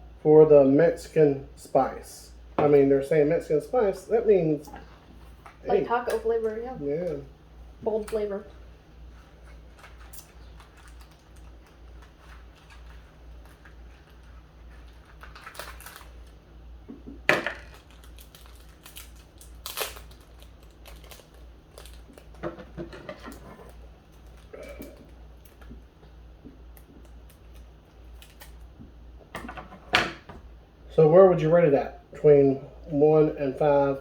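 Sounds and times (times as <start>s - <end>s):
steady low hum: 0.0s - 34.0s
crunching of snacks being eaten: 9.5s - 16.4s, 17.6s - 22.4s.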